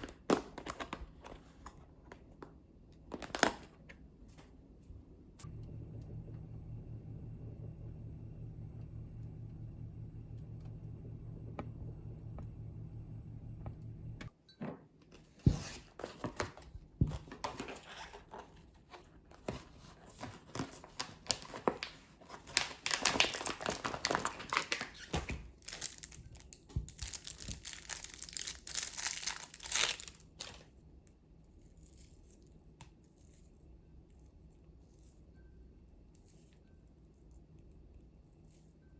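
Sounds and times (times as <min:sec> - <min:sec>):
plastic packaging crinkling: 0:20.1 - 0:30.7.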